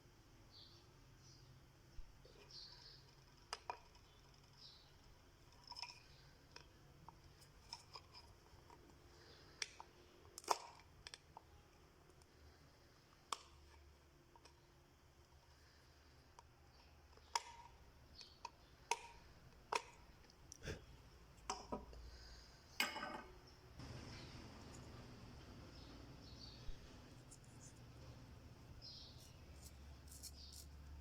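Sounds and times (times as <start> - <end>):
small parts clicking and tapping: 2.2 - 12.5, 13.1 - 15.5, 16.2 - 20.6.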